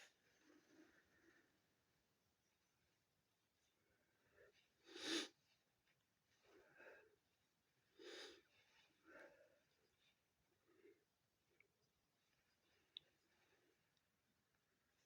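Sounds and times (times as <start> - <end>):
person sniffing congested nose: 4.9 - 5.3.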